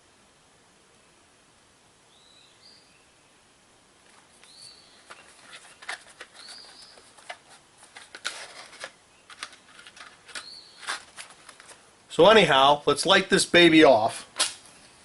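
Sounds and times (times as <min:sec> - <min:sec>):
matches scraping: 0:04.0 - 0:11.8, 0:14.2 - 0:14.9
bird calling: 0:04.4 - 0:07.3, 0:09.1 - 0:11.2.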